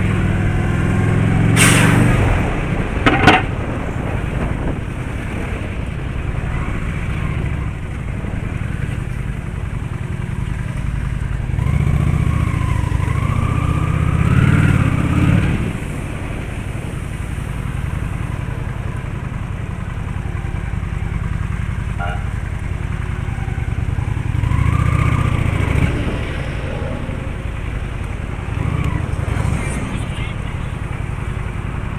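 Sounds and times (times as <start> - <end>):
vehicle whine speeding up: 0.0 - 9.5, 22.9 - 31.9
engine and road rumble: 0.0 - 31.9.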